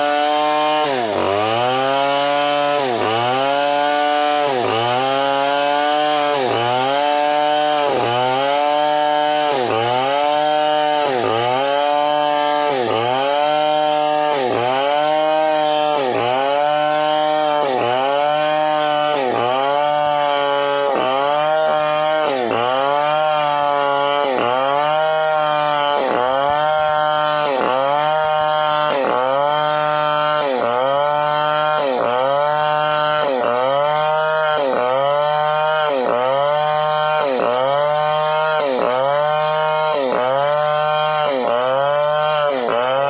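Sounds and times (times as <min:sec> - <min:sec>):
chainsaw cutting log: 0:00.0 - 0:43.0.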